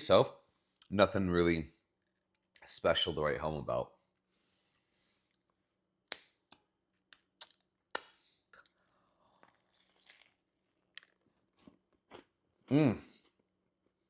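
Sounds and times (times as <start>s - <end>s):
cookie crunching while eaten: 6.1s - 12.4s.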